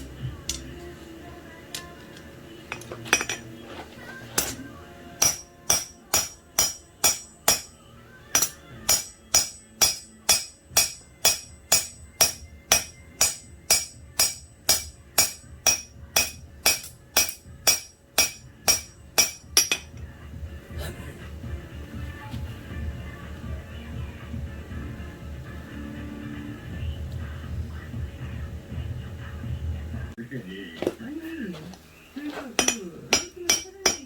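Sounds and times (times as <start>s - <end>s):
hammer striking steel on anvil: 5.2s - 20.0s, 32.6s - 34.0s.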